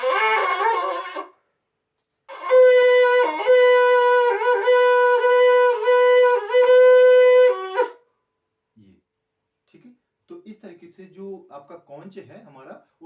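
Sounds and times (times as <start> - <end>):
conch shell blown: 0.0 - 1.4, 2.3 - 8.1.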